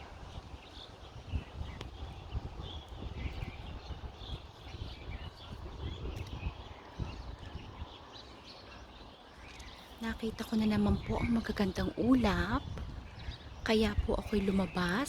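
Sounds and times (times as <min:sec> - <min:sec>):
small birds chirping: 0:00.0 - 0:15.0
wind gusting on microphone: 0:00.0 - 0:15.0.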